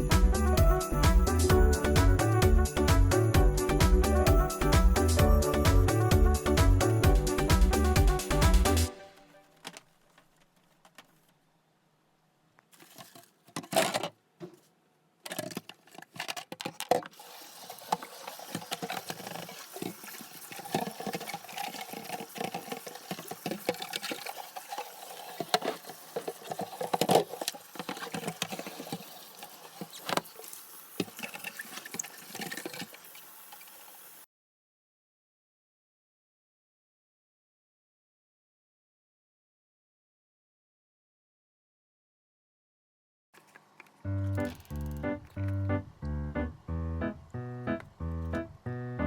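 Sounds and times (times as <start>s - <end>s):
water running and splashing: 17.1s - 34.2s.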